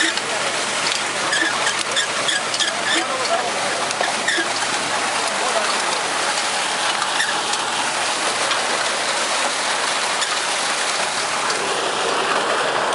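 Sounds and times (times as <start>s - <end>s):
soil rattling through harvester: 0.0s - 12.9s.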